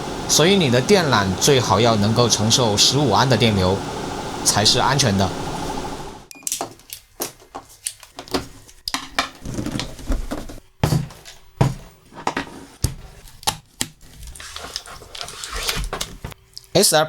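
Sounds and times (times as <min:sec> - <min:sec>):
faint steady hum: 0:00.0 - 0:07.0.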